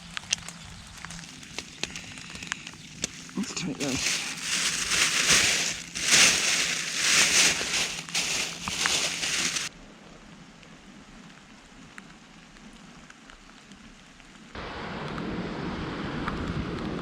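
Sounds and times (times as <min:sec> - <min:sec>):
leafy stems rustling and snapping: 0:00.1 - 0:09.7.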